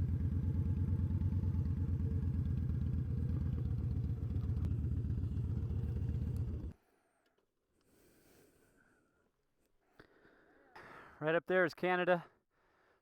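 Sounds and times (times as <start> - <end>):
motorcycle engine idling: 0.0 - 6.8.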